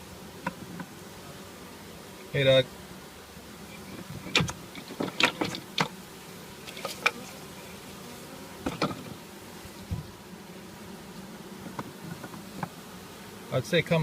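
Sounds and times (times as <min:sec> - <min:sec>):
bees buzzing: 0:00.0 - 0:14.0
sharp clicks and knocks: 0:03.9 - 0:06.0, 0:08.6 - 0:09.1.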